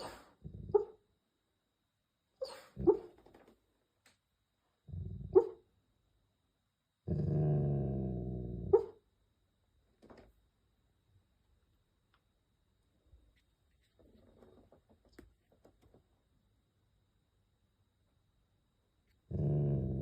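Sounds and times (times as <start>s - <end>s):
dog snoring: 19.3s - 20.0s.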